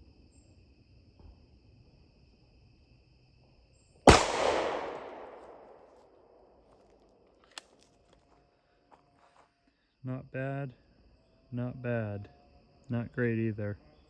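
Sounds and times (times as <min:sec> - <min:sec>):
pistol shot echoing: 0:04.1 - 0:06.5.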